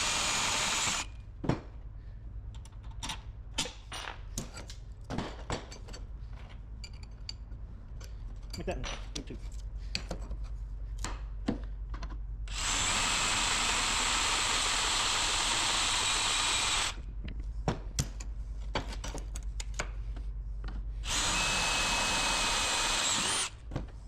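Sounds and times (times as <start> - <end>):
handheld power tool running: 0.0 - 1.1, 12.5 - 17.0, 21.0 - 23.6.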